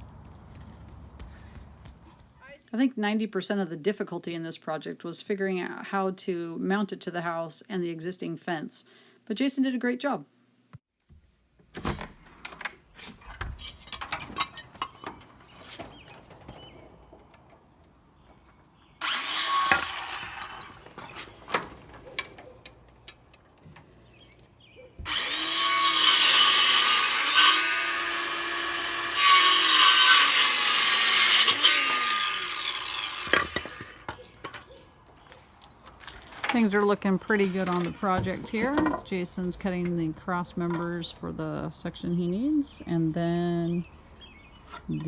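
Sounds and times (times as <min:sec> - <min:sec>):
power saw cutting wood: 0:19.0 - 0:22.3, 0:25.0 - 0:41.0.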